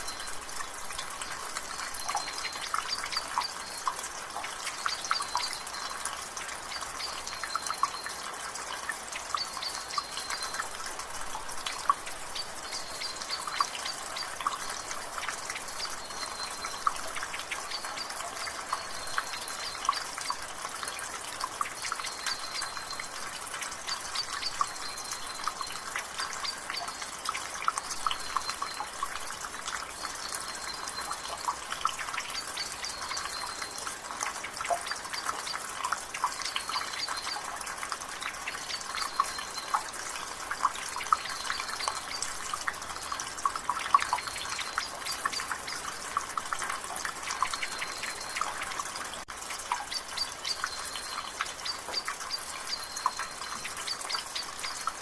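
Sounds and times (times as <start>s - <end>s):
light rain hiss: 0.0s - 55.0s
water dripping from a gutter: 0.0s - 55.0s
faint bird chirp: 4.7s - 8.3s, 9.2s - 49.0s, 49.6s - 55.0s.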